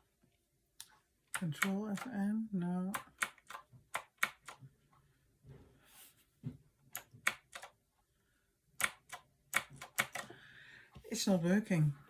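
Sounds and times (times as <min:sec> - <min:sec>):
mechanical keyboard keys clicking: 0:07.0 - 0:07.7, 0:08.8 - 0:10.3.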